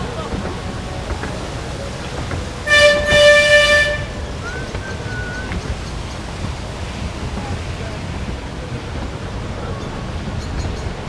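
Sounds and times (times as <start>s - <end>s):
horn toots: 2.6s - 4.6s.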